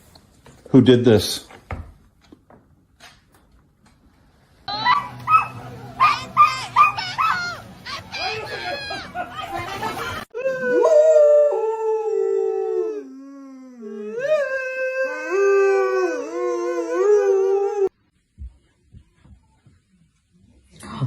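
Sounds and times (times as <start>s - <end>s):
dog howling: 4.7s - 7.6s, 10.4s - 18.0s.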